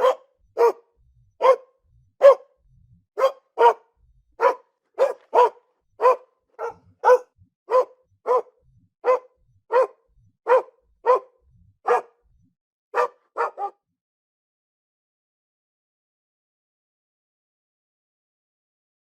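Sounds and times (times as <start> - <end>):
dog barking: 0.0 - 0.8, 1.4 - 2.5, 3.2 - 3.8, 4.4 - 11.3, 11.9 - 12.2, 13.0 - 13.8.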